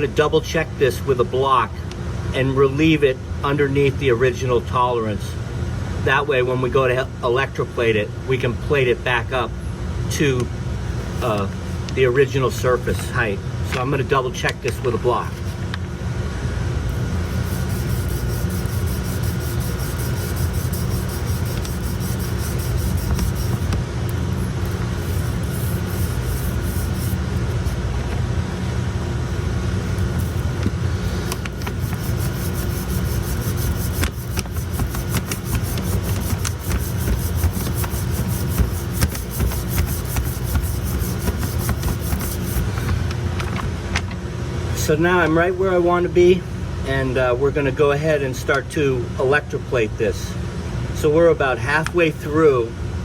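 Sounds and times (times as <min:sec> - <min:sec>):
faint hum: 0:00.0 - 0:53.0
low machine rumble: 0:14.8 - 0:42.0
abrasive block scratching metal: 0:16.9 - 0:27.8, 0:29.8 - 0:43.1.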